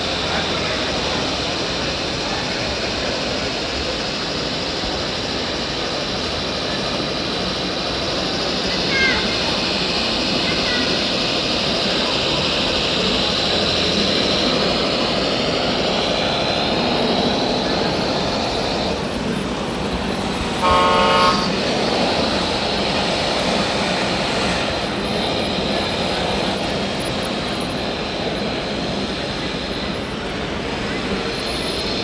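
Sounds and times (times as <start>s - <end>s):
high whine: 17.4s - 23.4s
horn toot: 20.6s - 21.6s.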